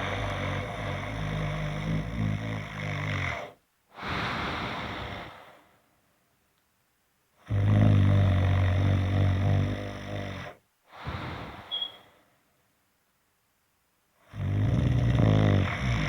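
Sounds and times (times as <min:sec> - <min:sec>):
person snoring: 0:00.0 - 0:05.7, 0:07.4 - 0:12.1, 0:14.3 - 0:16.0
breathy out-breath: 0:03.9 - 0:05.9, 0:10.9 - 0:12.4.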